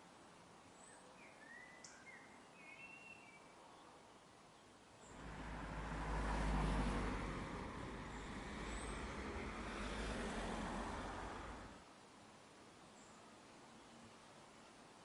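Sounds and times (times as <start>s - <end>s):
faint bird chirps: 0.8s - 5.2s
road vehicle passing: 5.1s - 11.8s.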